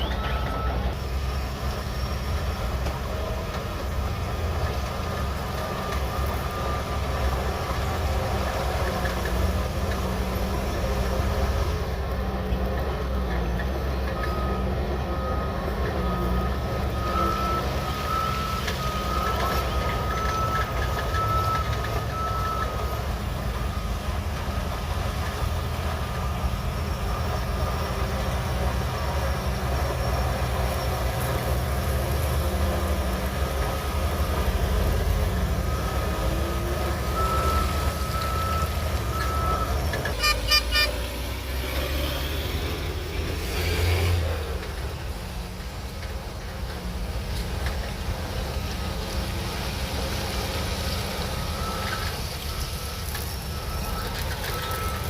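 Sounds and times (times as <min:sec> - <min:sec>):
reversing alarm beeping: 0:00.0 - 0:08.8, 0:14.1 - 0:29.2, 0:33.6 - 0:42.9, 0:50.5 - 0:55.0
bulldozer diesel engine running: 0:00.0 - 0:55.0.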